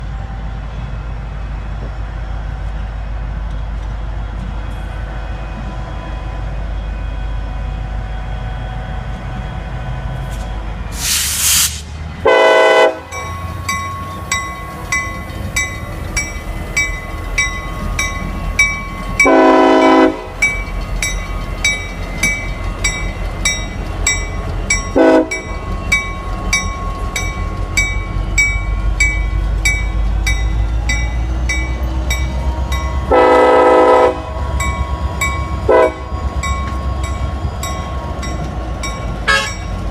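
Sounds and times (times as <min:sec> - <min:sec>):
diesel locomotive engine rumble: 0:00.0 - 0:39.9
locomotive air horn blasts: 0:12.2 - 0:13.2, 0:19.2 - 0:20.4, 0:25.0 - 0:25.4, 0:33.1 - 0:34.4, 0:35.7 - 0:36.1, 0:39.2 - 0:39.6.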